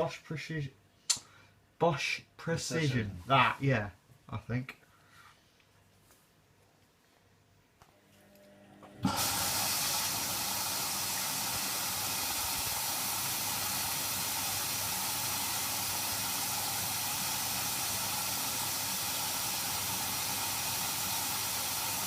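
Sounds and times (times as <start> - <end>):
water filling drum hiss: 9.0 - 22.0.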